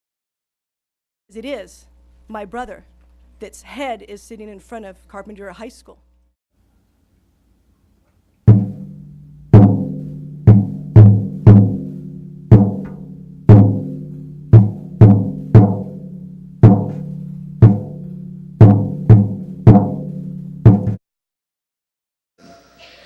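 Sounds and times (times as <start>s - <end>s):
low drum hits: 8.5s - 21.0s.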